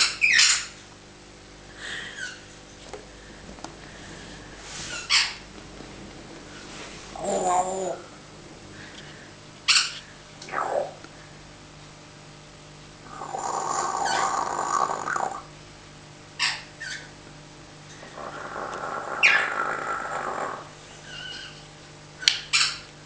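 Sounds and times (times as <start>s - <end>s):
parrot squawking: 0.0s - 0.8s, 2.1s - 2.4s, 4.9s - 5.4s, 9.7s - 11.0s, 13.3s - 15.5s, 16.4s - 17.1s, 18.2s - 21.6s, 22.5s - 22.9s.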